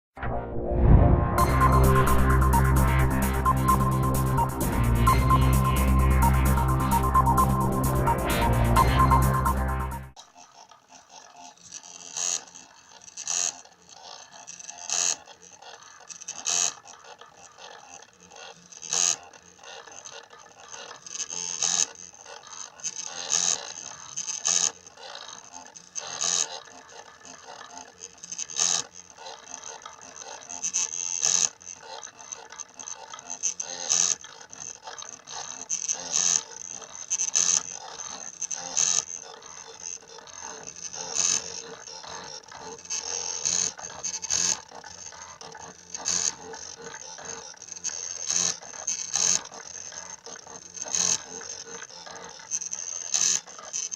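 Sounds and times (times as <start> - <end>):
high-pitched hum: 0.2 - 10.2.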